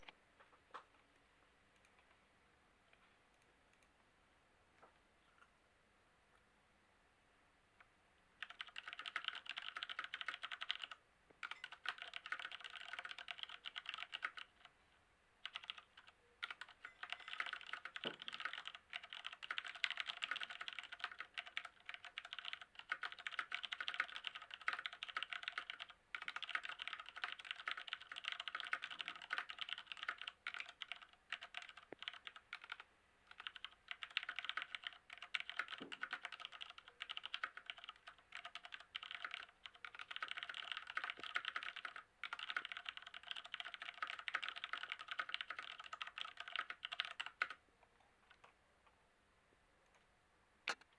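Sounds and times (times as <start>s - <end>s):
mechanical keyboard typing: 8.4s - 14.7s, 15.4s - 47.6s.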